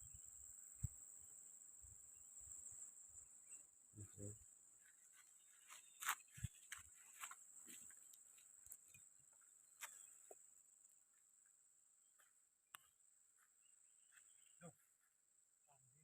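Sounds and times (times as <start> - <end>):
high-pitched insect drone: 0.0 - 12.3.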